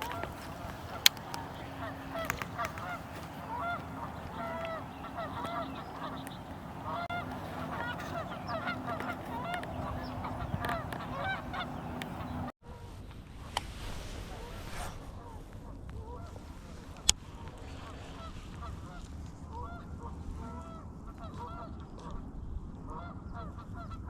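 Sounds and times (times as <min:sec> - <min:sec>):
geese honking: 0:00.0 - 0:12.5, 0:15.2 - 0:22.2
steady low hum: 0:00.0 - 0:21.0.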